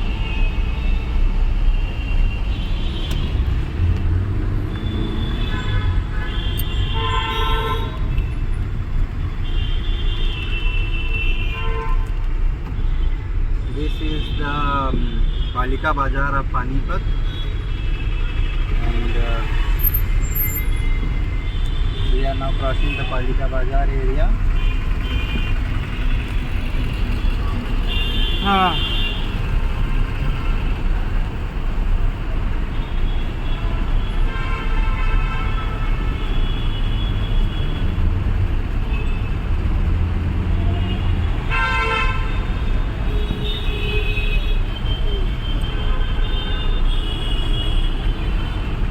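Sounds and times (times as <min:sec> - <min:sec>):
rumble of traffic engines: 0:00.0 - 0:48.9
vehicle horns honking: 0:04.7 - 0:08.4, 0:24.4 - 0:30.9, 0:32.7 - 0:38.0, 0:40.4 - 0:48.8.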